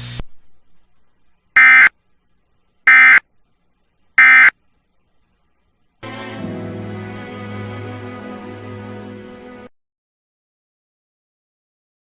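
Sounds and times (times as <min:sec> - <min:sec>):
digital data screech bursts: 0:01.6 - 0:01.9, 0:02.9 - 0:03.2, 0:04.2 - 0:04.5
music: 0:06.0 - 0:09.7.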